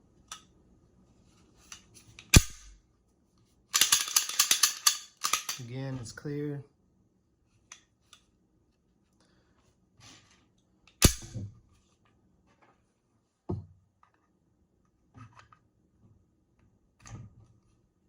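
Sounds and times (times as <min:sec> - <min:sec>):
pistol sharp clack: 0:02.4 - 0:02.7, 0:11.0 - 0:11.4.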